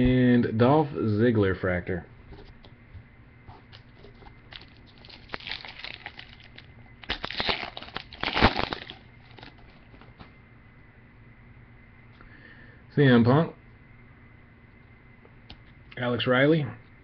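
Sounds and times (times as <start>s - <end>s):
foil wrapper tearing and crinkling: 4.5s - 9.6s.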